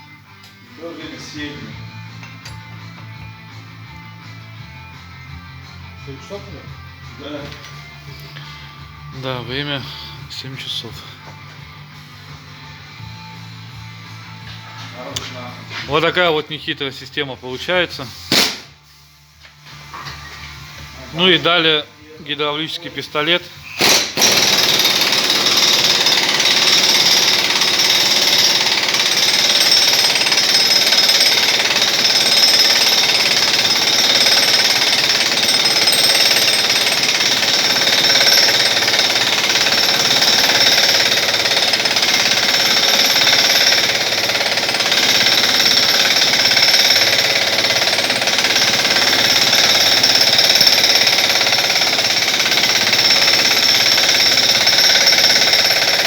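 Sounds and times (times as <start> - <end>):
pneumatic impact wrench hammering: 18.3 - 18.8, 23.6 - 56.0.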